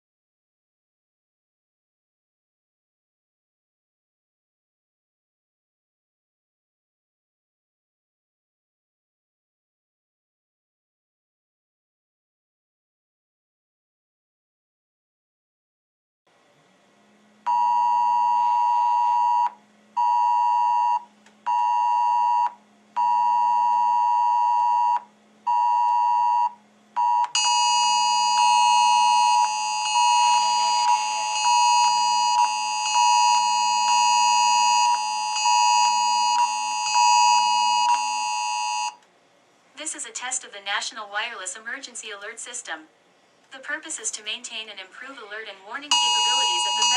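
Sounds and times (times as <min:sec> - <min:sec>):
phone alert two-tone beeps: 0:45.9 - 0:46.9.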